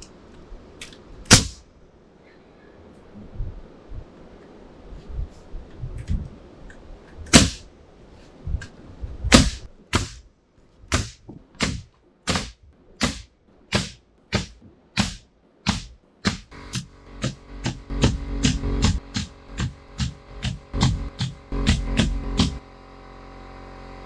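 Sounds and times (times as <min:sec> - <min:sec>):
hammer striking nails into wood: 0:07.3 - 0:07.6, 0:09.3 - 0:10.3, 0:10.9 - 0:22.6.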